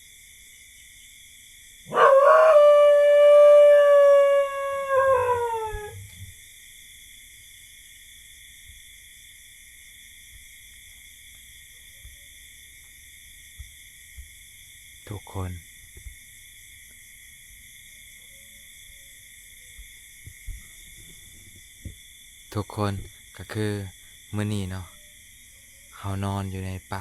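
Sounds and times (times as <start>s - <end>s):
night insects droning: 0.0s - 27.0s
dog howling: 1.9s - 6.2s.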